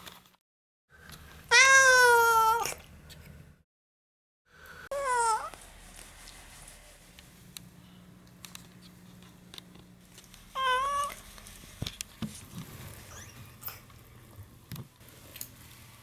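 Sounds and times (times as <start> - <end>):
cat meowing: 1.5 - 2.8, 4.9 - 5.5, 10.6 - 11.2.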